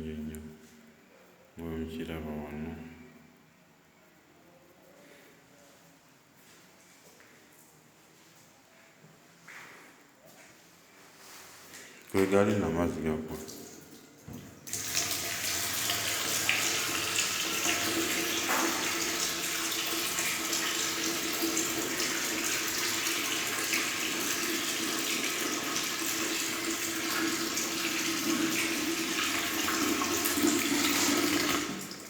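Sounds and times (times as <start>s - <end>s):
tap running into sink: 14.2s - 31.9s.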